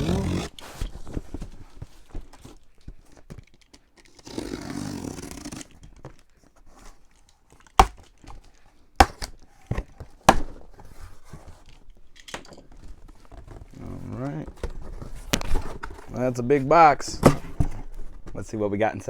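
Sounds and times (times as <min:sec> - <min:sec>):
cardboard box ripping: 0:00.0 - 0:02.6, 0:04.1 - 0:05.9, 0:07.8 - 0:08.2, 0:09.0 - 0:11.5.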